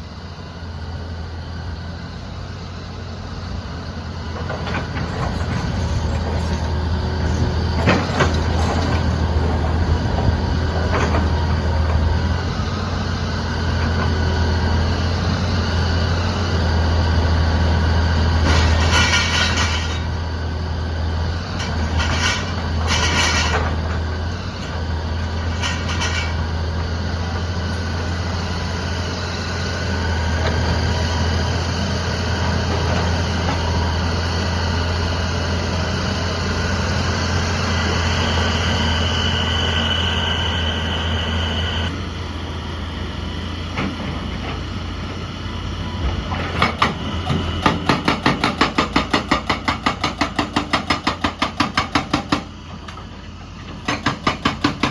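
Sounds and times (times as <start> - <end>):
excavator diesel engine droning: 0.0 - 54.9
high whine: 37.6 - 43.5.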